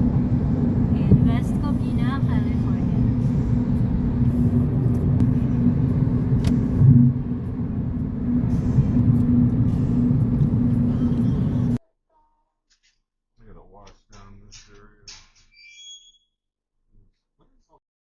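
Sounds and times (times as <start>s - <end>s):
road rumble with engine hum: 0.0s - 11.8s.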